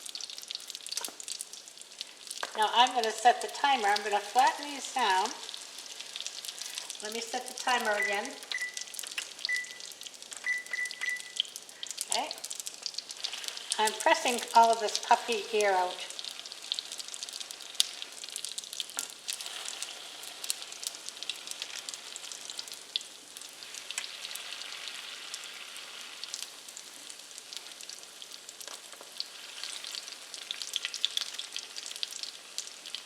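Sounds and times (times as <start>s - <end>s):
crackling pops of frying: 0.0s - 33.0s
dough sizzling in oil: 0.0s - 33.0s.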